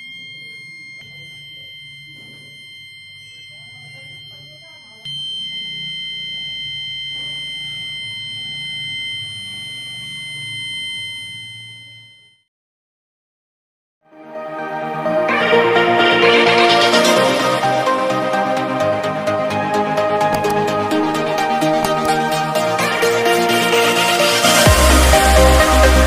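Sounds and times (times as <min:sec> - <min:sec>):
high-pitched buzzer tone: 0:00.0 - 0:12.5.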